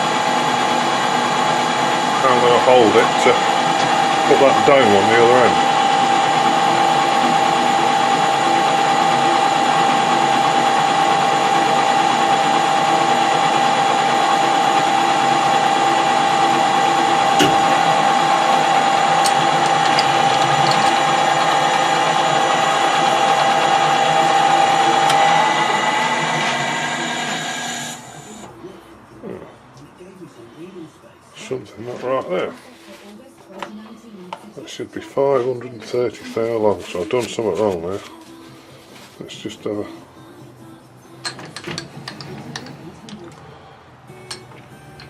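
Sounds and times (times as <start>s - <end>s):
lathe gear whine: 0.0s - 28.5s
metal lathe running: 0.0s - 28.5s, 41.2s - 43.4s.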